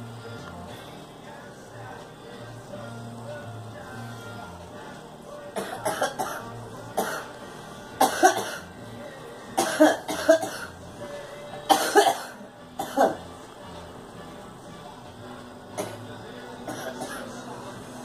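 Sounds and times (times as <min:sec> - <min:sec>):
girl coughing: 0:05.6 - 0:06.4, 0:08.0 - 0:08.6, 0:09.6 - 0:10.7, 0:11.7 - 0:13.2.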